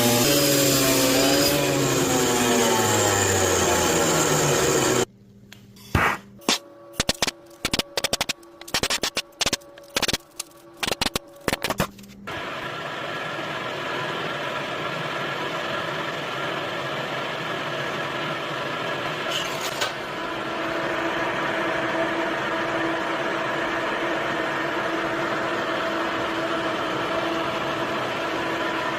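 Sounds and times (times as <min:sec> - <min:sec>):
electric tool motor whining: 0:00.0 - 0:05.1.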